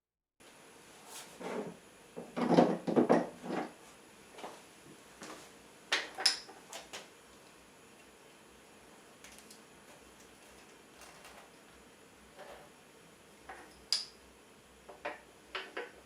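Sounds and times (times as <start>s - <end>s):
hard objects knocking: 2.2s - 3.7s.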